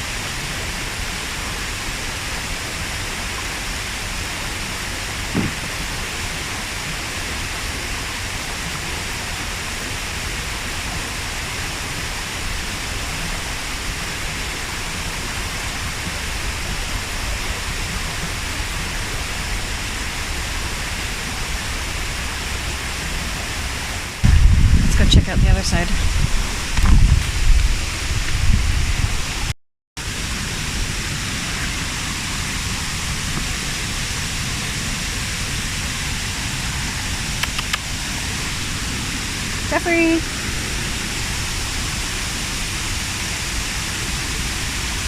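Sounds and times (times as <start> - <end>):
waterfall rushing water: 0.0 - 24.5, 29.1 - 45.0
short low thump: 5.3 - 5.8, 24.2 - 25.0.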